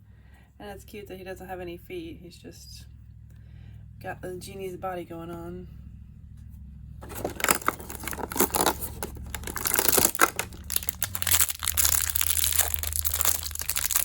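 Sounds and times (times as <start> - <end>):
plastic packaging tearing and crinkling: 7.0 - 14.0.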